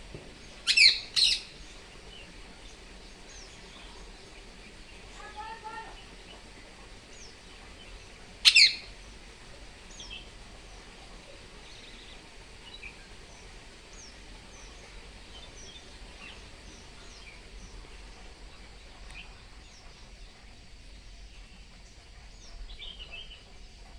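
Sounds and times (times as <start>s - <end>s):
faint parrot chirps: 0.6s - 1.6s, 8.4s - 8.9s
parrot squawk: 0.7s - 1.4s, 8.5s - 8.8s.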